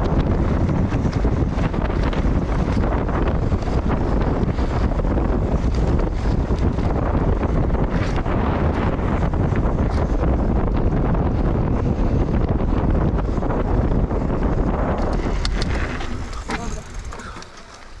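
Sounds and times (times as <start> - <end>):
bike tyres rolling on trail: 0.0 - 18.0
wind buffeting microphone: 0.0 - 18.0
sharp clicks and knocks: 15.0 - 18.0.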